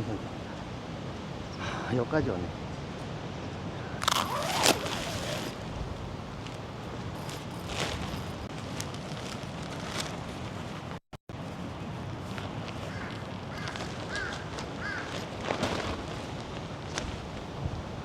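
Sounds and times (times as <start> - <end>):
wind and surf hiss: 0.0 - 8.8, 10.8 - 18.0
tent rustling: 4.0 - 17.6.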